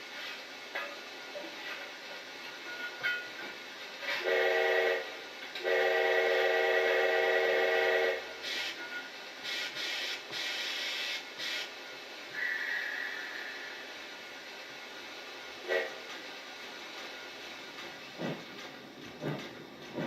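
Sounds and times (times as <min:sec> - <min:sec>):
steam hissing bursts: 0:04.0 - 0:16.1
steam locomotive whistle: 0:04.2 - 0:08.3, 0:12.4 - 0:13.8.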